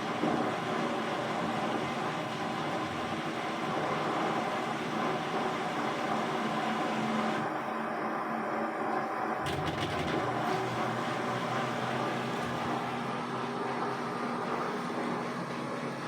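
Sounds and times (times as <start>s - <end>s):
washing machine hum and whir: 0.0s - 16.0s.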